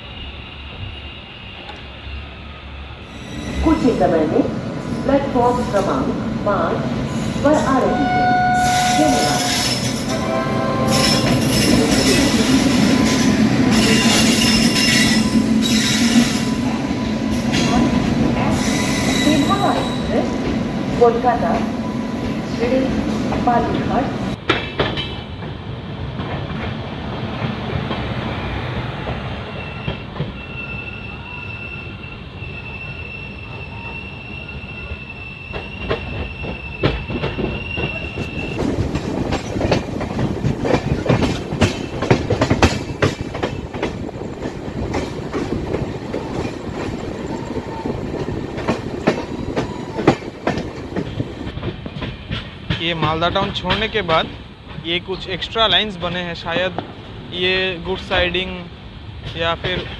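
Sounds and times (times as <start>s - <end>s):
train wheels rolling on track: 0.0s - 31.2s, 33.0s - 59.9s
high-pitched wheel squeal: 7.1s - 20.2s, 29.5s - 39.6s, 44.9s - 51.5s
wheels clattering over rails: 37.8s - 52.8s.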